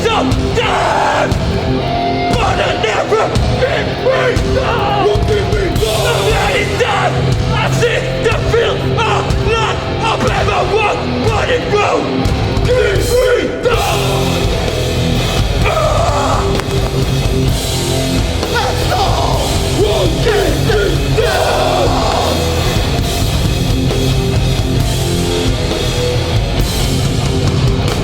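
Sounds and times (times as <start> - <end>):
shouted vocals: 0.0 - 14.7, 15.4 - 17.4, 18.3 - 23.0
hardcore band playing live: 0.0 - 28.0.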